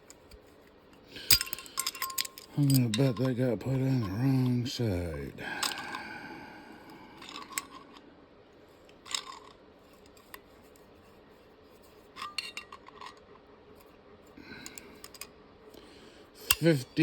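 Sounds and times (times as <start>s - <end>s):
small metal parts clinking: 1.1s - 4.6s, 5.5s - 6.0s, 7.2s - 8.0s, 8.9s - 10.4s, 12.1s - 13.3s.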